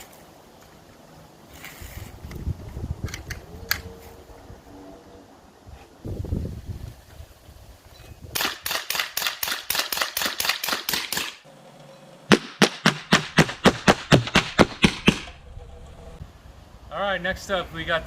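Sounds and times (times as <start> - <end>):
air rifle shots: 8.3 - 11.4, 12.3 - 15.4.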